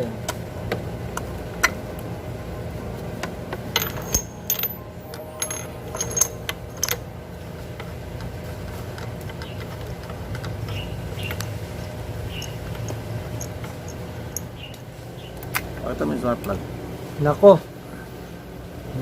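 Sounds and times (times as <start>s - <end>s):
steady low hum: 0.0s - 19.0s
socket wrench clinking on metal: 3.8s - 7.0s.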